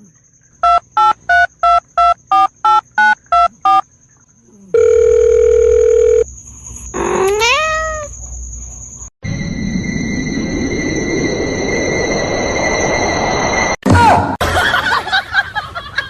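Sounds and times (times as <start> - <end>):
steady phone tone: 0.6 - 3.8, 4.7 - 6.3
telephone keypad beeps: 0.6 - 3.8
cat meowing: 7.0 - 8.1.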